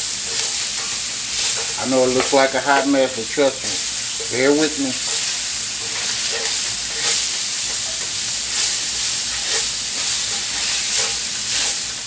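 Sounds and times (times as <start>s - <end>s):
onions sizzling in a frying pan: 0.0s - 12.0s
utensil stirring and scraping: 0.2s - 12.0s.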